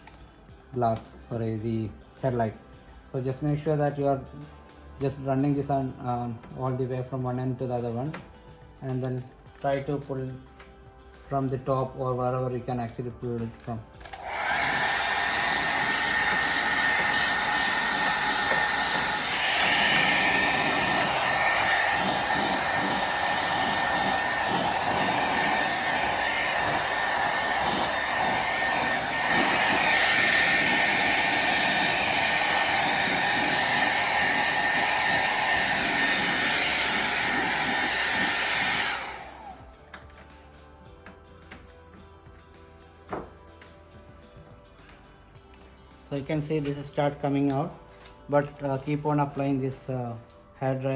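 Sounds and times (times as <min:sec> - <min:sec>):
hair dryer running: 0:14.0 - 0:40.1.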